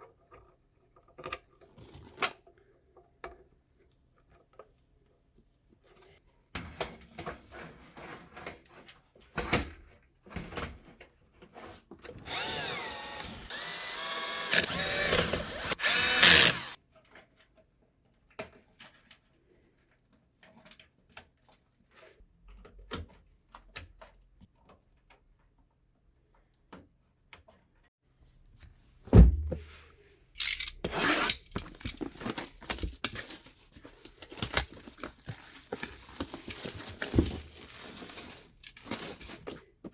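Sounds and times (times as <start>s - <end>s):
electric screwdriver motor whine: 12.2s - 16.8s
sharp thump: 29.1s - 29.7s
clicks and knocks of parts handled: 30.4s - 30.8s.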